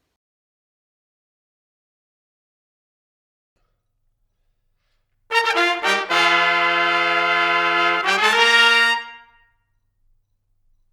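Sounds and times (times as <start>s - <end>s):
solo brass fanfare: 5.3s - 9.4s.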